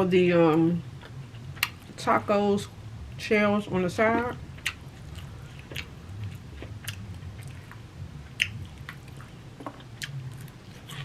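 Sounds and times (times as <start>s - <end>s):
chewing food: 4.2s - 11.0s.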